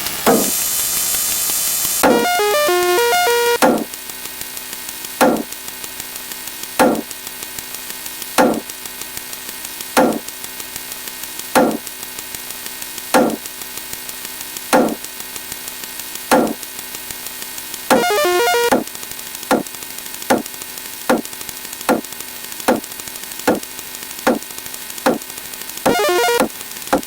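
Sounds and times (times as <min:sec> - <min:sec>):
dull knock-like hit: 0:00.3 - 0:00.5, 0:03.6 - 0:03.9, 0:05.2 - 0:05.5, 0:06.8 - 0:07.1, 0:08.4 - 0:08.6, 0:10.0 - 0:10.2, 0:11.6 - 0:11.8, 0:13.2 - 0:13.4, 0:14.8 - 0:15.0, 0:16.3 - 0:16.6, 0:17.9 - 0:18.8
electronic hum: 0:00.3 - 0:00.6, 0:02.0 - 0:03.9, 0:05.2 - 0:05.5, 0:06.8 - 0:07.1, 0:08.4 - 0:08.7, 0:10.0 - 0:10.2, 0:11.6 - 0:11.8, 0:13.2 - 0:13.4, 0:14.8 - 0:15.0, 0:16.3 - 0:16.6, 0:17.9 - 0:18.9, 0:25.9 - 0:27.0.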